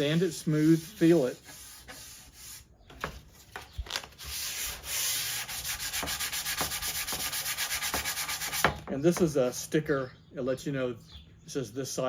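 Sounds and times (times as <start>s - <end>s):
sandpaper rasping: 0.0s - 2.7s, 4.0s - 8.7s.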